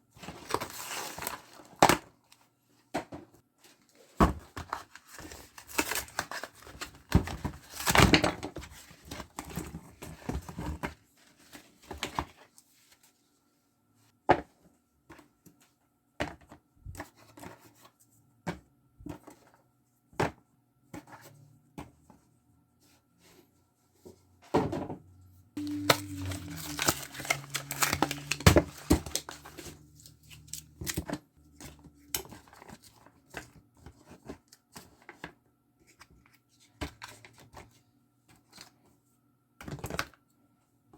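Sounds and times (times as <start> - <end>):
packaging rustling and clatter: 25.6 - 35.2.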